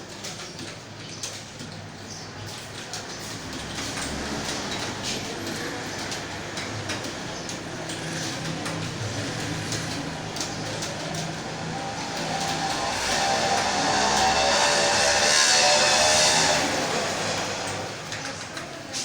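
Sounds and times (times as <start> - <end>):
keyboard typing: 2.6 - 12.8.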